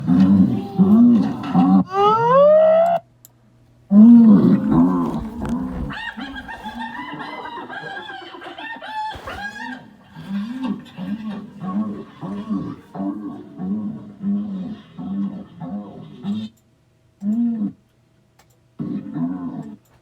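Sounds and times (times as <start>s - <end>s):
hyena whooping: 1.5s - 3.0s.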